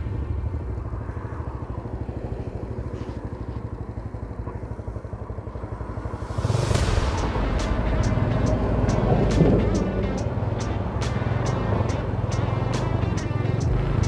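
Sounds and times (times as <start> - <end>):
motorcycle engine running: 0.0 - 14.0
rushing wind noise: 5.6 - 14.0
sharp ticks: 6.3 - 14.0.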